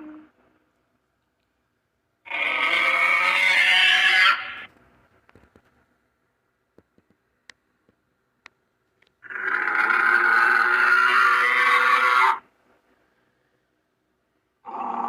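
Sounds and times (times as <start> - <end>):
long creature call: 2.3 - 4.7, 9.2 - 12.5, 14.6 - 15.0.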